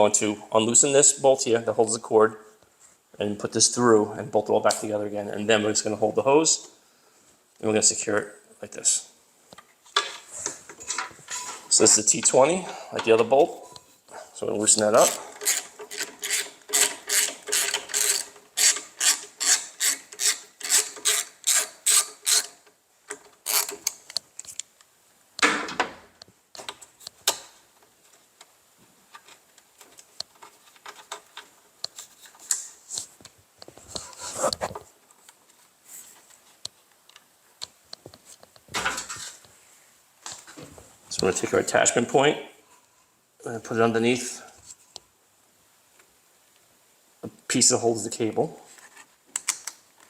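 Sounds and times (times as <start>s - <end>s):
scrapes and handling noises: 9.5s - 24.7s, 26.6s - 37.3s, 37.9s - 41.7s, 48.6s - 50.0s.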